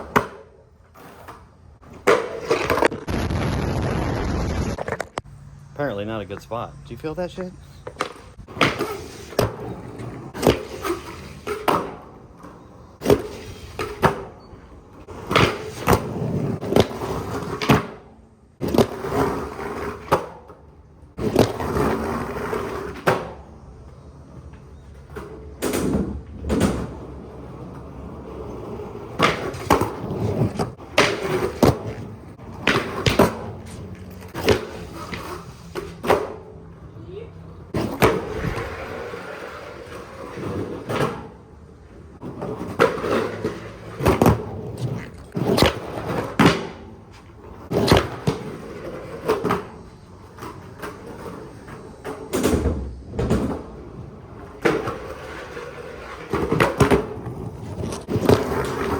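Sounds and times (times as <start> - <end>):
skateboard rolling on rough pavement: 0.0 - 6.5, 7.5 - 58.9.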